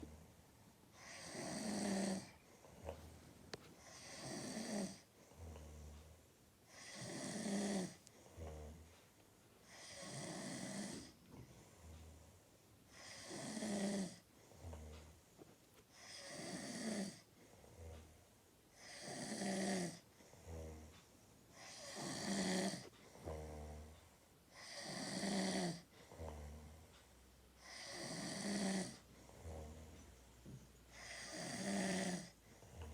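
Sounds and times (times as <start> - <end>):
loud snoring: 1.0 - 3.0, 3.8 - 6.1, 6.7 - 8.9, 9.6 - 12.3, 12.9 - 15.2, 16.0 - 18.2, 18.8 - 20.9, 21.5 - 26.9, 27.6 - 30.2, 30.9 - 32.9.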